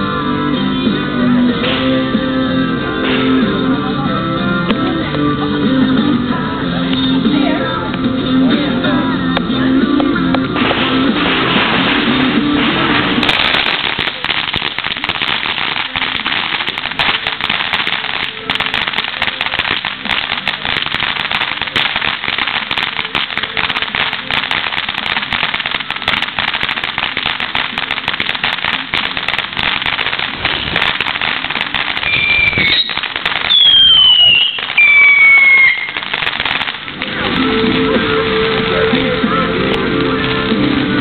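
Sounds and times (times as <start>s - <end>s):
firework crackling: 0.0s - 41.0s
high descending whistle: 32.1s - 36.0s.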